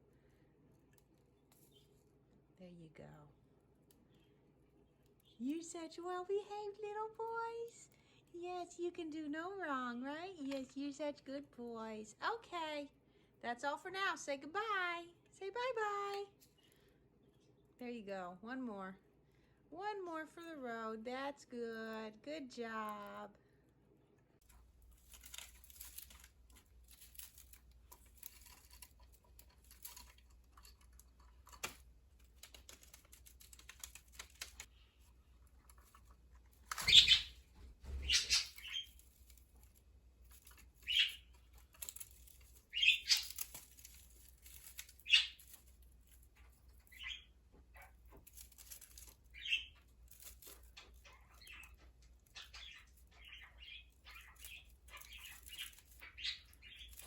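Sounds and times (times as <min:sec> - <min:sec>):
budgerigars chirping: 0:36.8 - 0:37.4, 0:38.0 - 0:38.9, 0:40.8 - 0:41.2, 0:42.7 - 0:43.4, 0:45.0 - 0:45.4.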